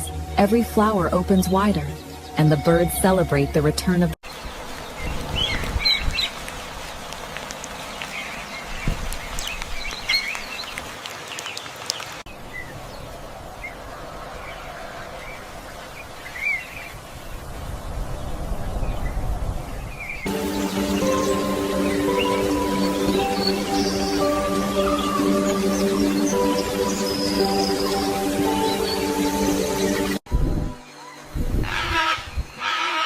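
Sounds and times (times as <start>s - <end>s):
music: 0.0s - 4.2s, 20.3s - 32.2s
birds chirping: 4.2s - 13.8s, 19.9s - 30.2s
outdoor background hiss: 20.3s - 30.2s.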